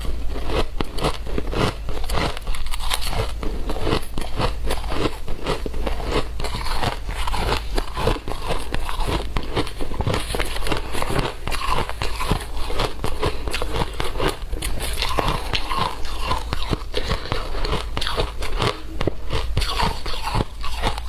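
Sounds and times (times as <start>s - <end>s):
crunching shaved ice: 0.0s - 21.0s.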